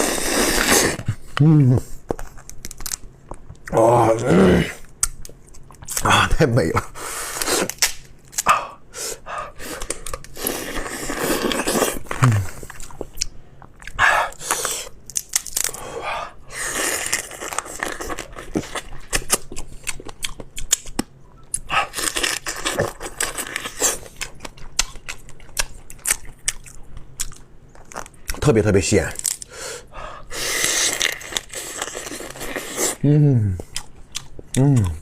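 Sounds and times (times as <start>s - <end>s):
crab shell cracking and tearing: 2.1s - 3.7s, 7.5s - 8.5s, 14.5s - 15.8s, 29.1s - 29.5s
crunching and chewing: 9.6s - 29.6s, 30.2s - 33.0s, 33.6s - 35.0s.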